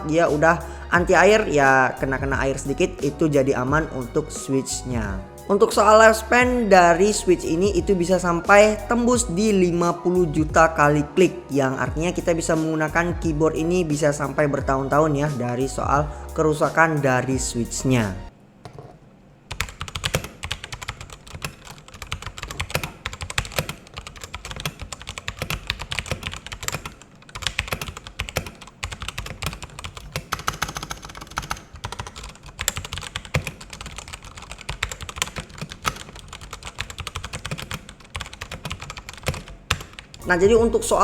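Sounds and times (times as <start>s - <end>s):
typing on mechanical keyboard: 19.5s - 40.2s.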